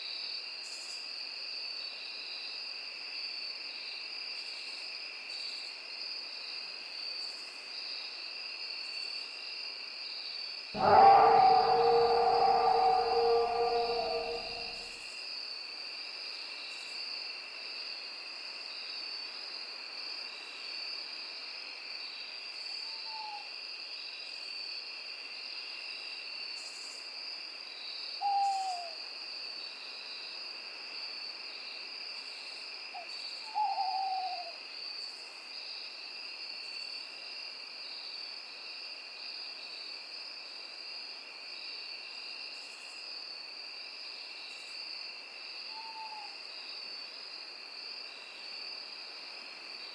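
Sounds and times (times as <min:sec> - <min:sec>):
owl hoots: 0:10.8 - 0:14.9, 0:28.3 - 0:28.9, 0:33.5 - 0:34.5, 0:45.7 - 0:46.3
high-pitched insect chorus: 0:10.8 - 0:15.0, 0:26.6 - 0:28.9, 0:31.2 - 0:49.9.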